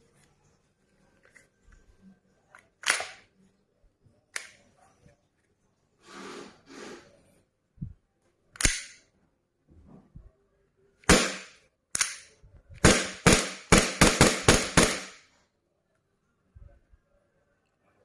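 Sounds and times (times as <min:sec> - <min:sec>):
air pistol shots: 0:11.1 - 0:12.2, 0:12.8 - 0:15.2.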